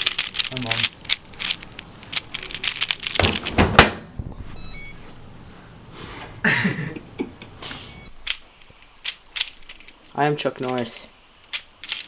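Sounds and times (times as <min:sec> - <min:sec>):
rustling: 0:00.0 - 0:06.3
short electronic beeps: 0:04.3 - 0:05.0, 0:07.9 - 0:08.1.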